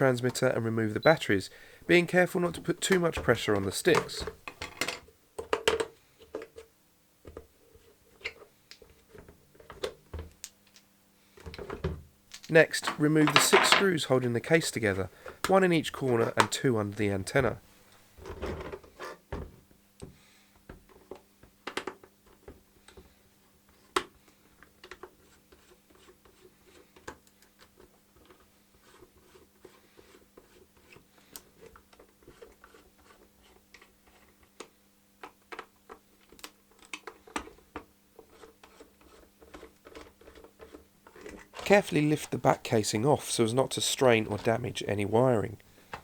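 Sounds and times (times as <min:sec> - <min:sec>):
faint steady hum: 0:00.0 - 0:21.5.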